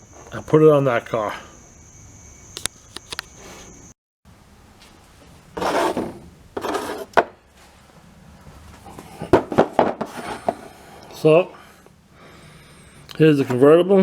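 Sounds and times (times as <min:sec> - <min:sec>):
sharp click: 0:02.6 - 0:03.3
small parts scraping: 0:02.6 - 0:03.8.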